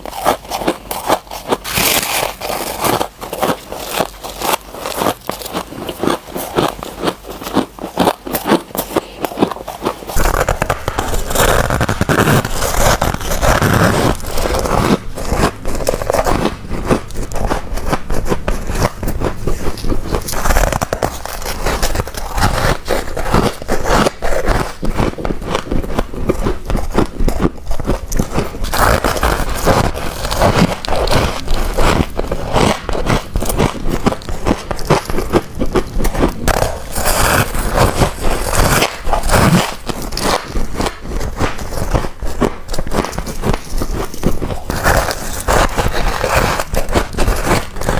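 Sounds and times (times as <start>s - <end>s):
crunching frost: 0.0s - 47.9s.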